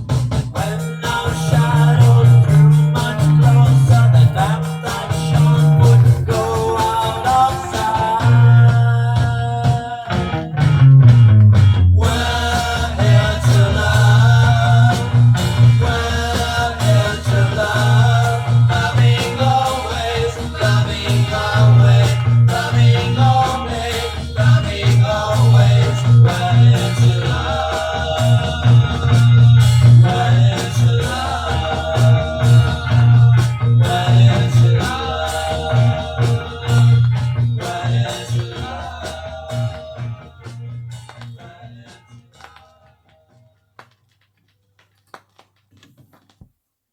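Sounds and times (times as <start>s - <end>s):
pulsing bass line: 0.0s - 42.3s
rock pop song with singing: 0.0s - 43.1s.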